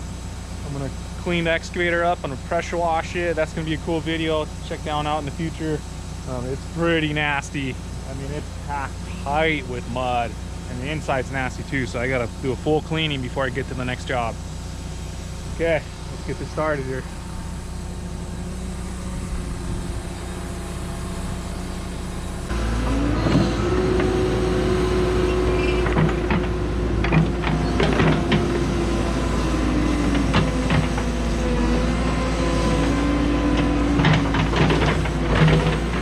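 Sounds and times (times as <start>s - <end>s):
excavator diesel engine: 0.0s - 36.0s
knocks and clunks: 25.2s - 36.0s.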